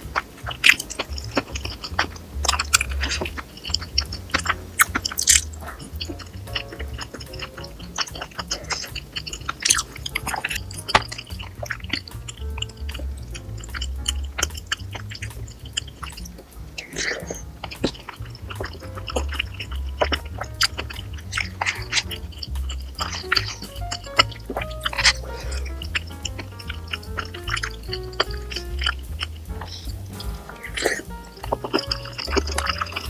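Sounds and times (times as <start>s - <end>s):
soft background music: 0.0s - 33.0s
chewing and biting food: 0.1s - 30.0s, 30.6s - 33.0s.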